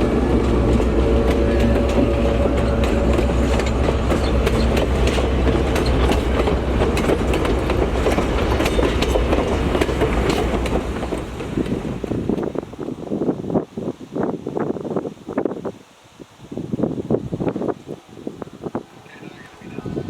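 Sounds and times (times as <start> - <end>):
train wheels clacking on rails: 0.0 - 12.6
diesel locomotive engine drone: 0.0 - 14.5.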